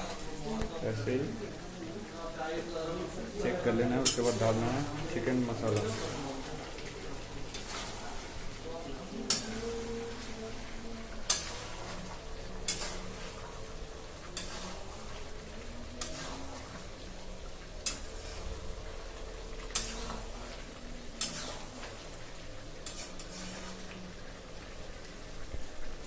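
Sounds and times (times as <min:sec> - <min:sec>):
food sizzling: 0:00.0 - 0:26.0
spoon scraping metal pan: 0:11.2 - 0:13.5, 0:14.3 - 0:15.2, 0:16.0 - 0:16.8, 0:19.7 - 0:20.4, 0:21.2 - 0:22.0, 0:22.8 - 0:23.8.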